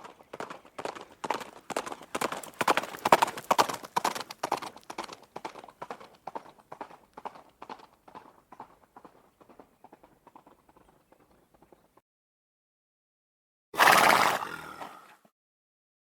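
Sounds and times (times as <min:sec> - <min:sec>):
horse hooves clip-clopping: 0:00.0 - 0:12.0.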